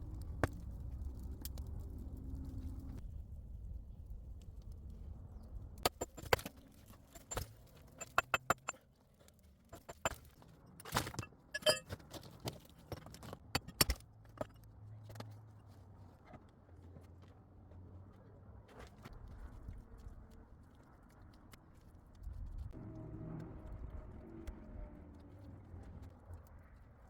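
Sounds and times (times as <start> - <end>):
low steady rumble: 0.0 - 8.7.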